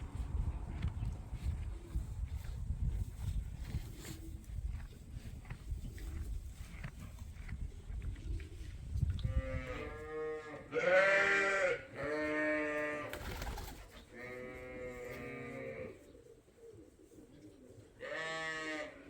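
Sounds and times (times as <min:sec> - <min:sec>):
sheep bleating: 0:09.5 - 0:13.1.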